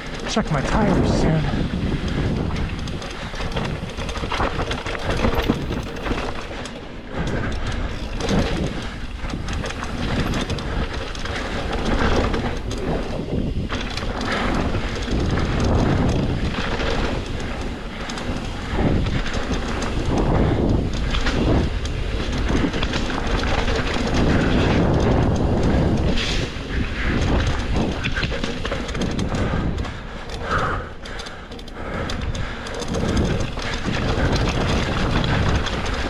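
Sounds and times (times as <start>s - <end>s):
bike rattling over rough trail: 0.0s - 36.0s
wind noise on microphone: 0.0s - 36.0s.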